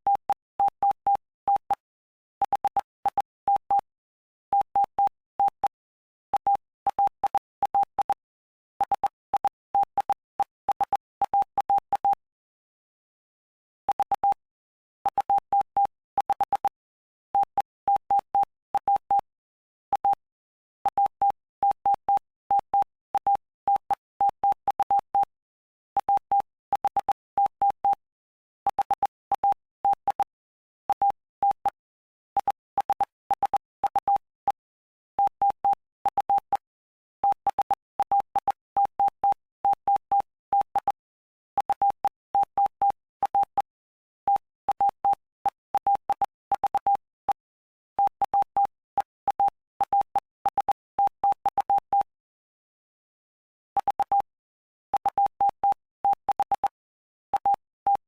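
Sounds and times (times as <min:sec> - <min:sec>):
morse code beeps: 0:02.4 - 0:03.9, 0:08.8 - 0:12.2, 0:13.9 - 0:14.4, 0:15.0 - 0:16.8, 0:20.8 - 0:25.3, 0:26.0 - 0:28.0, 0:28.7 - 0:31.8, 0:32.4 - 0:34.6, 0:35.2 - 0:41.0, 0:41.6 - 0:47.4, 0:48.0 - 0:52.2, 0:53.8 - 0:58.0.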